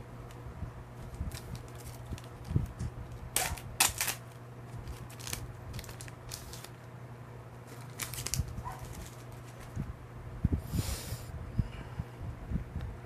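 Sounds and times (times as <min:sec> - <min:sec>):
low steady hum: 0:00.0 - 0:13.0
cards scraping and rustling: 0:01.0 - 0:06.9, 0:07.6 - 0:09.8.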